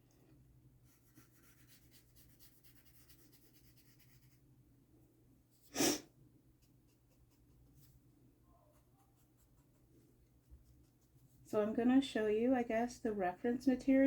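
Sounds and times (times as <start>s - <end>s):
pencil scratching on paper: 0.8s - 4.4s, 5.8s - 8.0s, 8.6s - 11.4s
short burst of breath: 5.7s - 6.1s.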